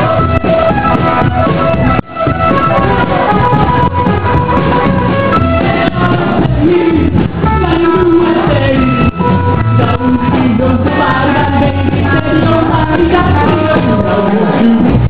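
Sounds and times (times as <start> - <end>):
rockabilly band music: 0.0 - 15.0.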